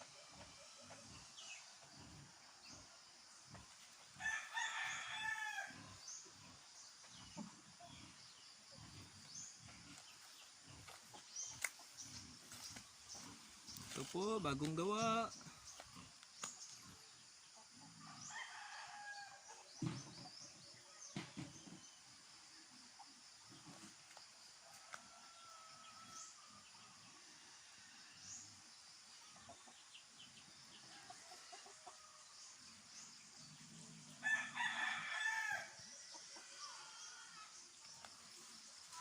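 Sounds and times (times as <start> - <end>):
rooster crowing: 4.2 - 5.9, 34.2 - 35.8
chickens clucking: 5.8 - 14.1.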